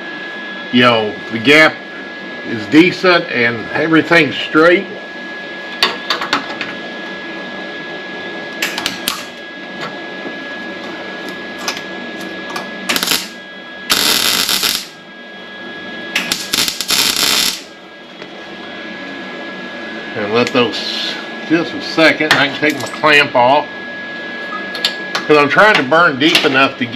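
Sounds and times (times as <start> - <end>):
steady hum: 0.0 - 26.9
welding arc crackles: 8.6 - 9.4, 12.9 - 15.0, 16.2 - 17.8.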